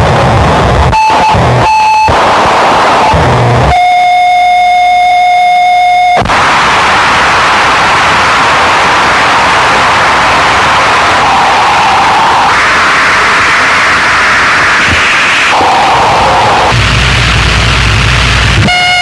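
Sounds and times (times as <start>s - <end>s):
distorted noise wall: 0.0s - 19.0s
steady electronic tone: 0.4s - 19.0s.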